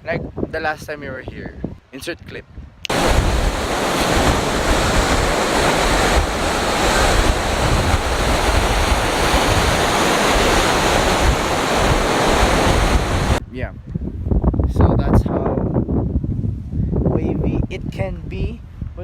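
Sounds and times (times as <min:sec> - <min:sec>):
wind buffeting microphone: 0:00.0 - 0:19.0
surf crashing against rocks: 0:02.9 - 0:13.4.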